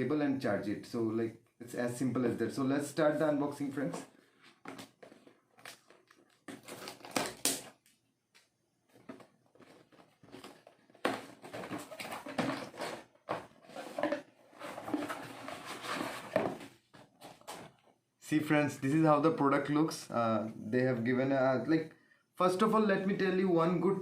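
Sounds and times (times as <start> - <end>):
packaging rustling and crinkling: 4.4 - 8.0, 8.8 - 17.8.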